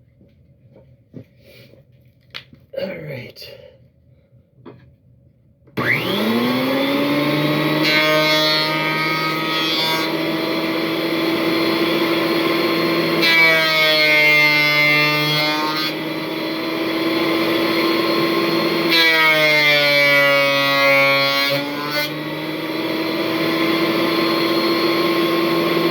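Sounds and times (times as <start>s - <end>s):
planer cutting boards: 5.8s - 25.9s
thickness planer motor hum: 5.8s - 25.9s.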